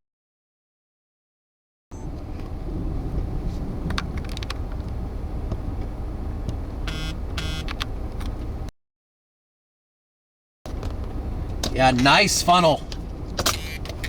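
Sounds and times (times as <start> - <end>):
vehicle rumble: 1.9 - 8.7, 10.7 - 14.0
short electronic beeps: 6.9 - 7.7.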